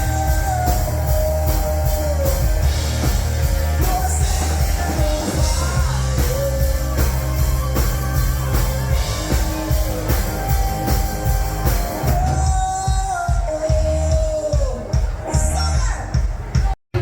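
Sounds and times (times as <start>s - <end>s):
rock music with singer: 0.0s - 17.0s.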